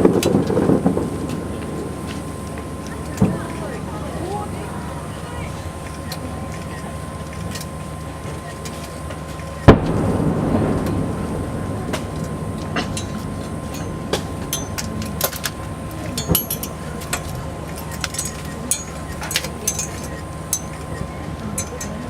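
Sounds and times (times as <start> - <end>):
fireworks pops and crackles: 0.0 - 3.9, 5.8 - 21.4
low rumble: 0.0 - 8.4, 9.6 - 21.7
loud firework bang: 9.6 - 15.0.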